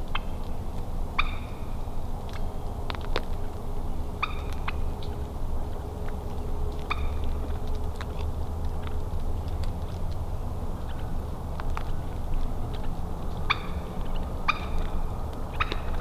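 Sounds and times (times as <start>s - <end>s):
wild turkey calling: 1.2s - 1.7s, 4.2s - 4.9s, 6.9s - 7.4s, 13.4s - 16.0s.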